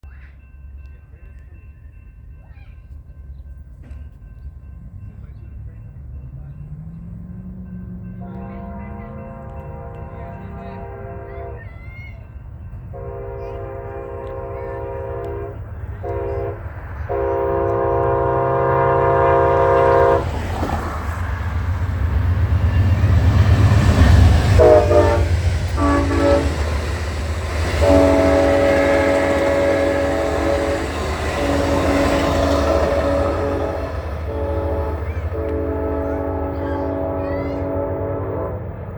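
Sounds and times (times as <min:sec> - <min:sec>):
rumble of passing train: 0:00.0 - 0:38.9
train air horn blasting: 0:08.1 - 0:11.7, 0:12.9 - 0:20.5, 0:22.5 - 0:38.9.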